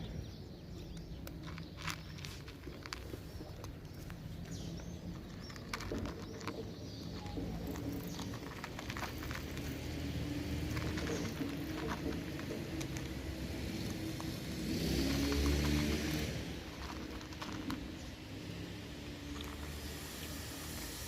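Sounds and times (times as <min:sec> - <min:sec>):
birds chirping: 0:00.0 - 0:21.0.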